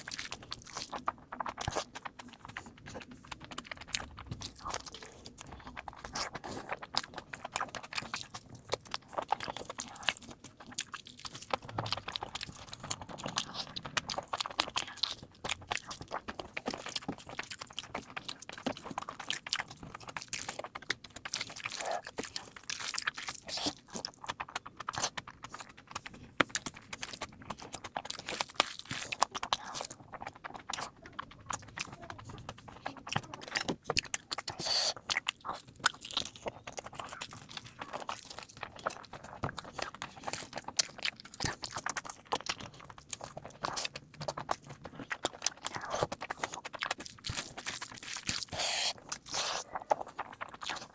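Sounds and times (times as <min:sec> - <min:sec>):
fast chewing with crunches: 0:00.0 - 0:50.9.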